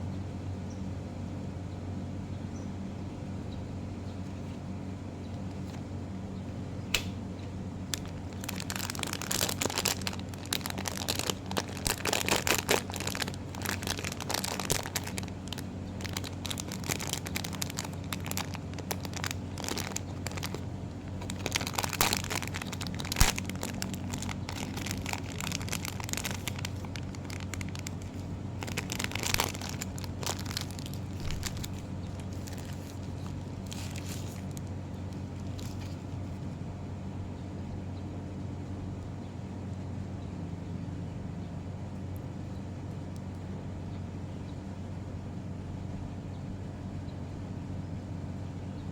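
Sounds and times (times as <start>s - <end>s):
sharp click: 6.9s - 7.2s
toy packaging crinkling: 7.9s - 36.3s.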